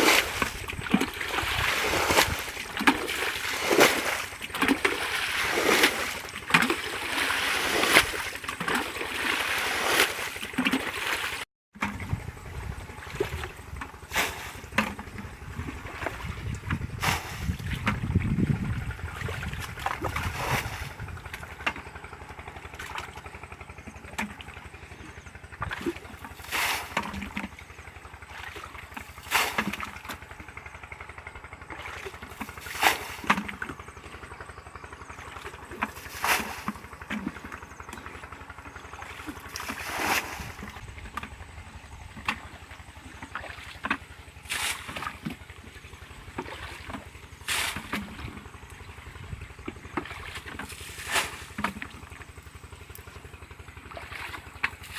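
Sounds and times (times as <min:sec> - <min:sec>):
water splashes: 0:00.0 - 0:12.0, 0:12.8 - 0:21.8, 0:25.6 - 0:27.6, 0:28.2 - 0:30.2, 0:31.7 - 0:33.8, 0:35.1 - 0:41.2, 0:42.2 - 0:49.0, 0:49.6 - 0:52.2, 0:53.9 - 0:54.9
low steady rumble: 0:00.0 - 0:54.9.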